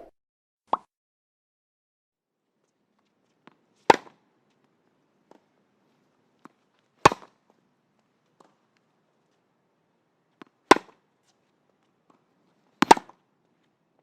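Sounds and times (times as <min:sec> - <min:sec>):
racket hitting tennis ball: 0:03.4 - 0:04.2, 0:06.4 - 0:07.4, 0:10.4 - 0:11.0, 0:12.8 - 0:13.2.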